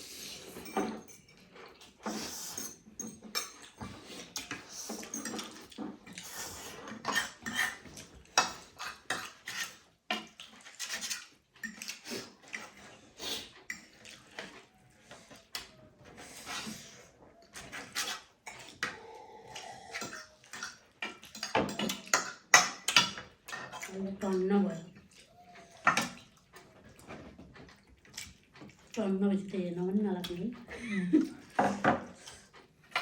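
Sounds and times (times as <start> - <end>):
cutlery clinking on plates: 0.5 - 12.8, 20.0 - 23.9, 31.5 - 32.2.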